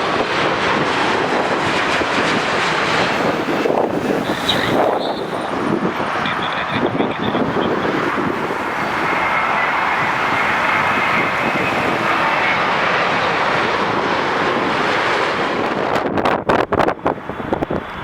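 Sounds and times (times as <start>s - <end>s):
jet engines during landing: 0.0s - 18.0s
faint high whine: 3.0s - 13.4s.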